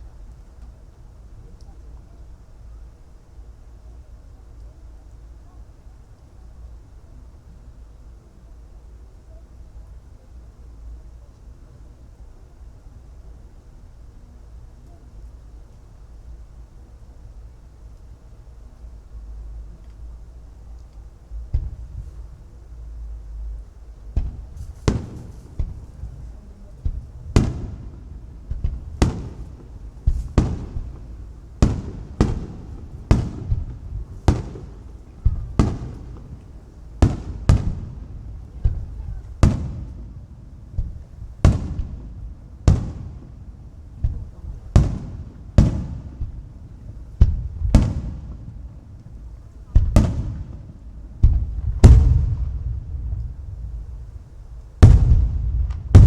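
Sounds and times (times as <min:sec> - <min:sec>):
firework shells bursting: 0:24.2 - 0:38.0, 0:51.2 - 0:56.0
low rumble: 0:51.4 - 0:56.0.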